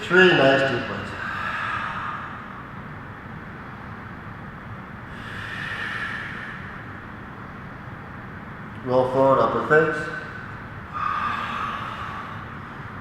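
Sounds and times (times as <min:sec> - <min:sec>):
deep breathing: 0:01.0 - 0:03.0, 0:05.0 - 0:07.8, 0:10.0 - 0:13.0.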